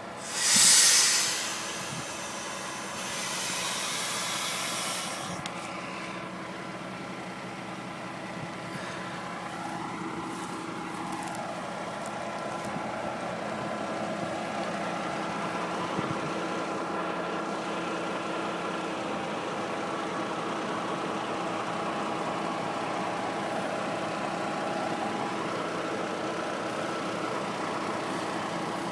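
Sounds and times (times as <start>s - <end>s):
steady tones: 0.0s - 5.6s
truck diesel engine idling: 0.0s - 28.9s.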